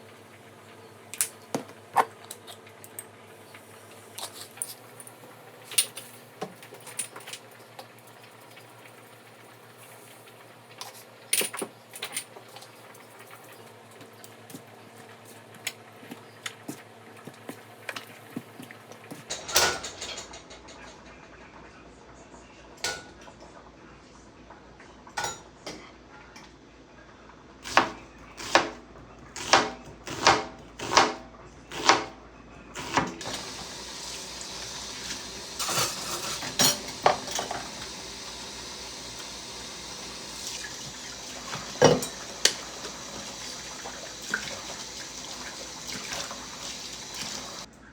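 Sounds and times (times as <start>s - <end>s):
dishes and utensils clattering: 19.1s - 21.2s, 33.2s - 47.7s.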